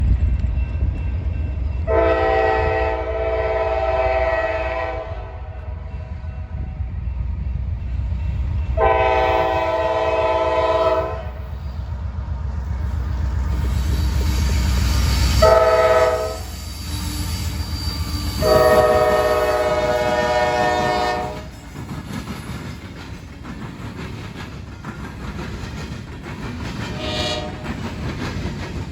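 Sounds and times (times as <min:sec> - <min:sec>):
locomotive rumble: 0:00.0 - 0:28.9
locomotive air horn blasts: 0:01.9 - 0:05.5, 0:08.8 - 0:11.4, 0:15.3 - 0:21.5, 0:27.0 - 0:27.6
train wheels clattering over rail joints: 0:07.5 - 0:28.9.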